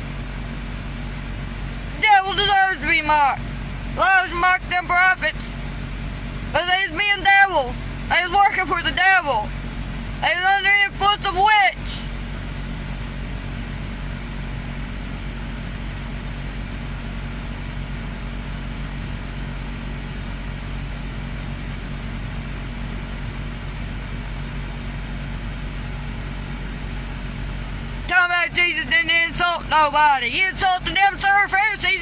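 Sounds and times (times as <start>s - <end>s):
low mechanical hum: 0.0s - 32.0s.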